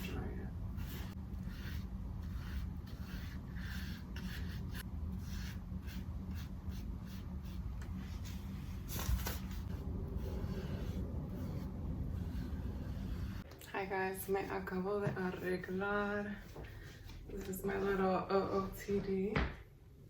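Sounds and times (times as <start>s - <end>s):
steady low hum: 0.0s - 20.0s
rubbing strokes: 0.8s - 13.5s.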